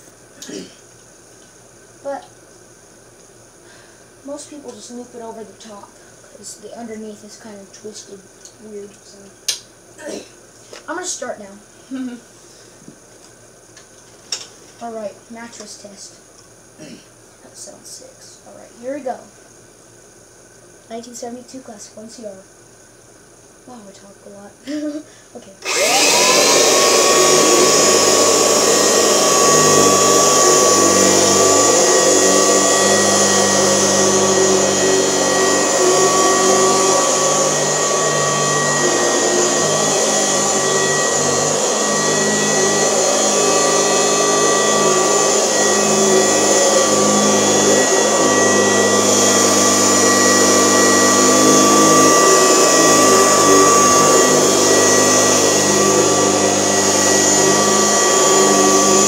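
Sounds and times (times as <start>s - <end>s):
vacuum cleaner motor whine: 25.6s - 59.0s.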